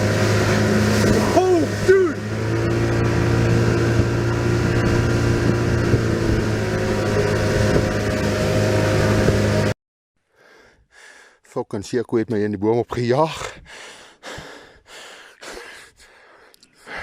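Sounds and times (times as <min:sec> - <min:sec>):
engine running steadily: 0:00.0 - 0:09.8.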